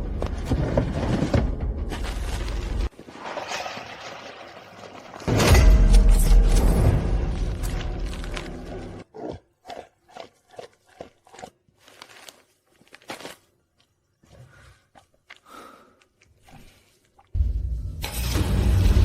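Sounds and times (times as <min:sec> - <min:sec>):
chewing crunches: 0:07.7 - 0:13.3.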